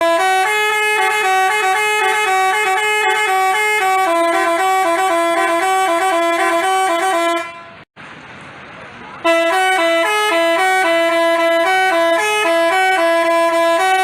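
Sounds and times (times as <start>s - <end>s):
musical bus horn melody: 0.0s - 7.9s, 9.2s - 14.0s.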